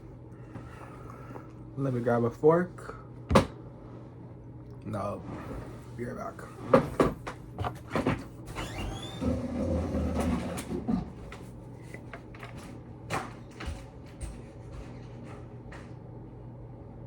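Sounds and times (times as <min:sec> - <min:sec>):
cupboard sliding open: 0:05.0 - 0:11.5.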